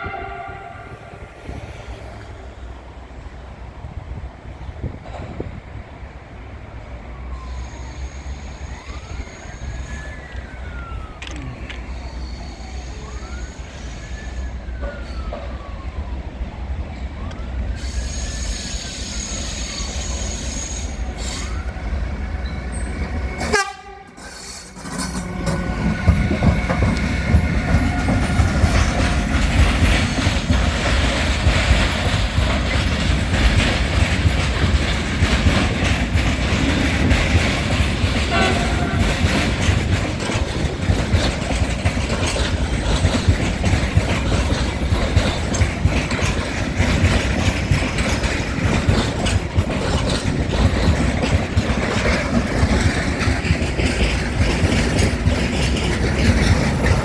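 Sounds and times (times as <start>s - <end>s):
train horn: 0.0s - 1.6s, 23.4s - 24.5s, 38.2s - 39.5s
freight train rumbling past: 0.0s - 57.0s
wheels clattering over rail joints: 22.2s - 57.0s.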